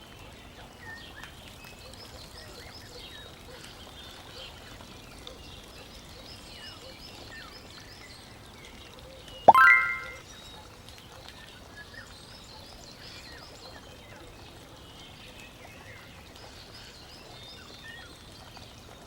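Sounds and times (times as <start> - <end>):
chime: 9.5 - 10.2.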